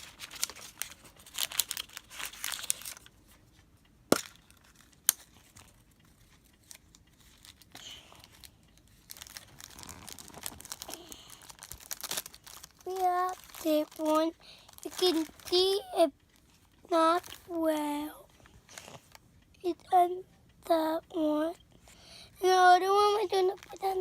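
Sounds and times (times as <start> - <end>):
packaging crinkling and tearing: 0.0 - 3.1, 4.6 - 15.8.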